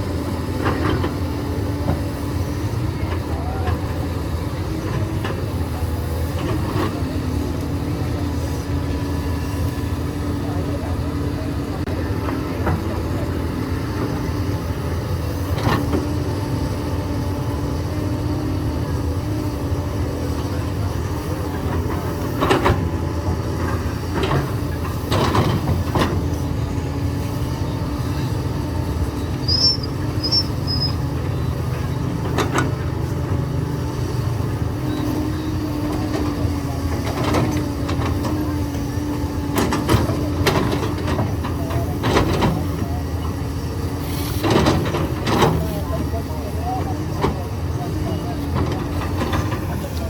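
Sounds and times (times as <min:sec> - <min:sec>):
excavator diesel engine running: 0:00.0 - 0:50.0.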